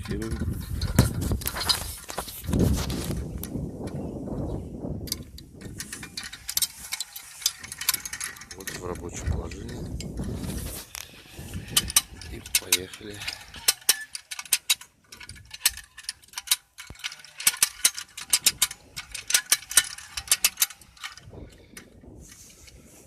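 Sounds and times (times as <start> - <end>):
winch ratchet clicking: 5.1 - 10.3, 11.6 - 21.9.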